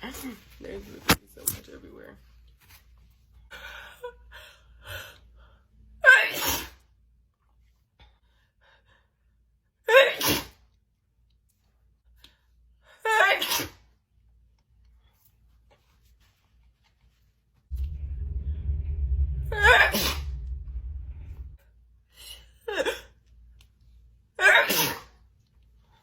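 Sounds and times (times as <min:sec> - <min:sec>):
woman sneezing: 0:06.0 - 0:06.8, 0:09.9 - 0:10.6, 0:13.1 - 0:13.8, 0:24.4 - 0:25.1.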